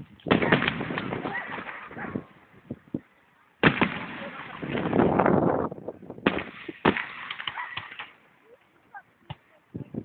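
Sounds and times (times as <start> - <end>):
fireworks sharp bangs: 3.6 - 5.0, 6.2 - 8.2.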